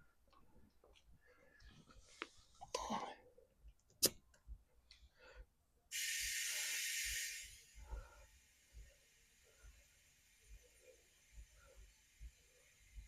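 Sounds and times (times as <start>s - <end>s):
compressed air hissing: 5.9s - 13.0s.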